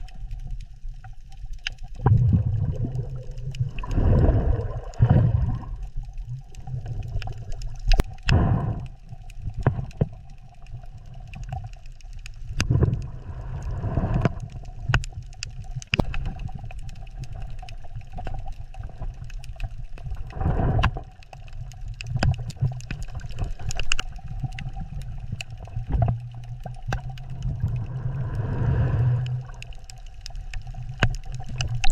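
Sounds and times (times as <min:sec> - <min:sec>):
crackling clicks: 0:00.0 - 0:31.9
gurgling breath and bubbles: 0:00.0 - 0:31.9
scuba diver breathing: 0:03.7 - 0:05.8, 0:08.1 - 0:09.1, 0:12.7 - 0:14.6, 0:20.2 - 0:21.1, 0:27.4 - 0:29.8
steady low rumble: 0:27.1 - 0:30.1.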